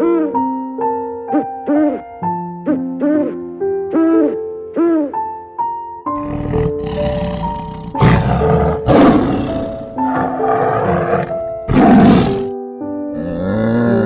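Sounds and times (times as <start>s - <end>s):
background music: 0.0s - 14.0s
large animal harsh calls: 6.2s - 12.5s.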